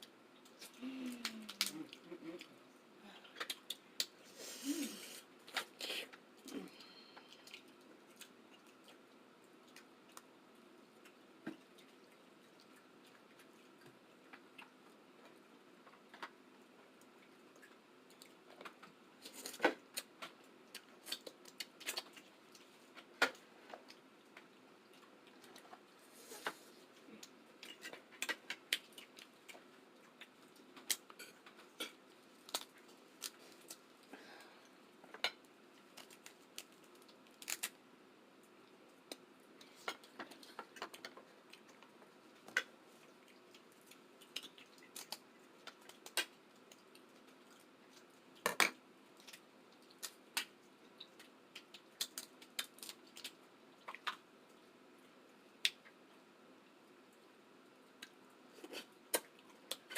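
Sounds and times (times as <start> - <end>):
chewing and sucking clicks: 39.1 - 48.1.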